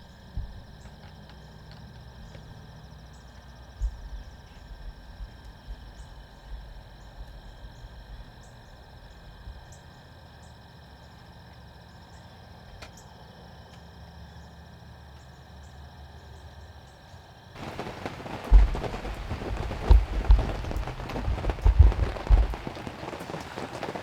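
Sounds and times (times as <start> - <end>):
faint steady tones: 0.0 - 24.0
loud low thumps: 17.6 - 22.8
heavy rain pouring: 17.6 - 24.0.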